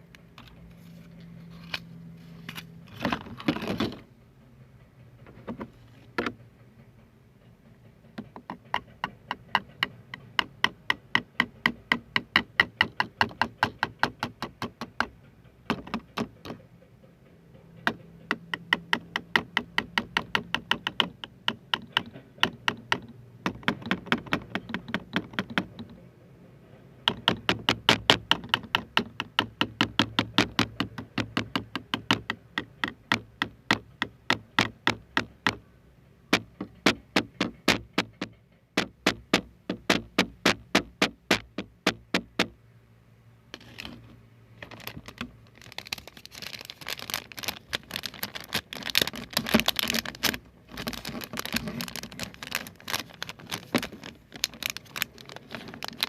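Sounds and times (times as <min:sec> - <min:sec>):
fingers tapping on hard object: 0:08.2 - 0:16.7, 0:17.6 - 0:26.0, 0:27.0 - 0:35.7, 0:36.3 - 0:42.6.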